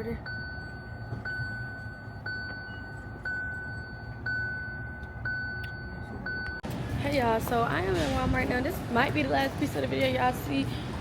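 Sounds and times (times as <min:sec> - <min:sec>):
car warning chime: 0:00.0 - 0:07.3
engine and road rumble: 0:00.0 - 0:11.0.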